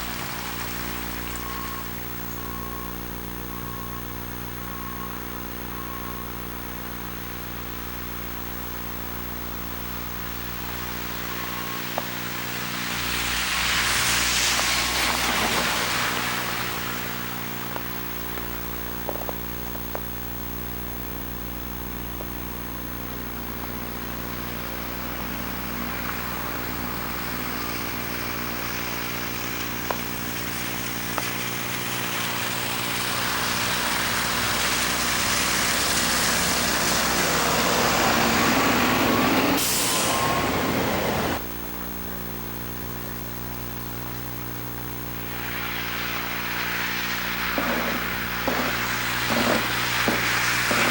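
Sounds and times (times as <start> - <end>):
car tyres hissing on snow: 0.0 - 2.9, 9.9 - 20.0, 24.0 - 41.4, 44.8 - 50.9
steady electrical buzz: 0.0 - 39.0, 39.7 - 50.9
vehicle approaching: 10.5 - 18.4, 24.2 - 41.4, 45.2 - 50.9.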